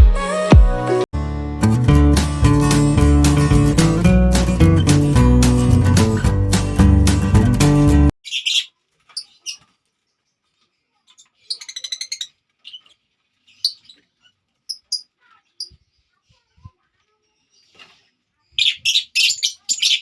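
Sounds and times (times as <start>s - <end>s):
guitar music: 1.2s - 8.1s
lovebirds chirping: 8.2s - 16.4s, 18.4s - 20.0s.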